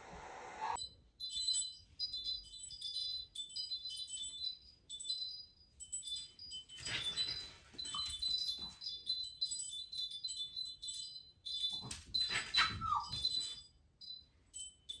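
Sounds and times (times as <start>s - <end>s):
wind chimes tinkling: 0.8s - 15.0s
dog whining: 12.2s - 13.6s.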